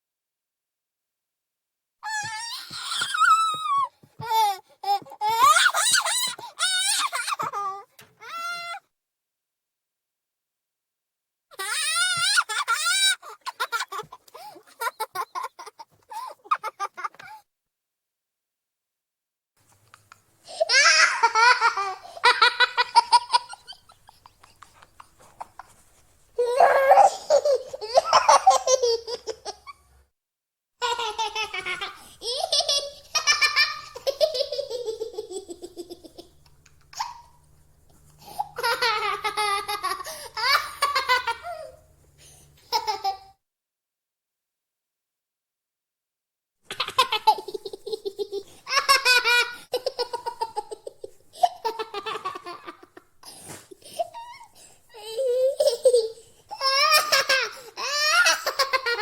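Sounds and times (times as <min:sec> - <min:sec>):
toddler squealing: 0:02.0 - 0:04.5, 0:05.2 - 0:08.8, 0:11.6 - 0:13.2
toddler laughing: 0:02.1 - 0:08.8, 0:11.6 - 0:17.4, 0:20.5 - 0:25.7, 0:26.4 - 0:29.8, 0:30.8 - 0:37.4, 0:38.3 - 0:41.8, 0:46.7 - 0:59.0
toddler giggling: 0:46.7 - 0:59.0.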